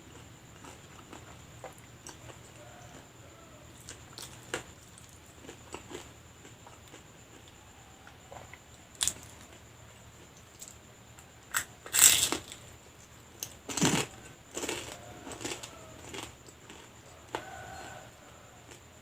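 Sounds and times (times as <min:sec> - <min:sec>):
crunching bites into fried rolls: 0:03.8 - 0:12.7, 0:13.4 - 0:18.8.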